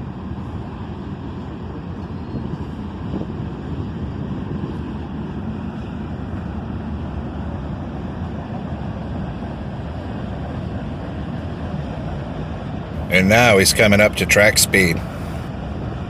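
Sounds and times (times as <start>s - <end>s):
freight train rumbling past: 0.0s - 16.0s.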